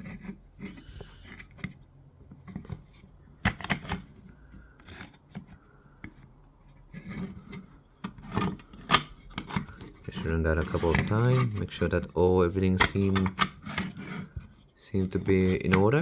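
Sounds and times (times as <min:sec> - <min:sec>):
plastic parts clicking: 0:12.8 - 0:14.1.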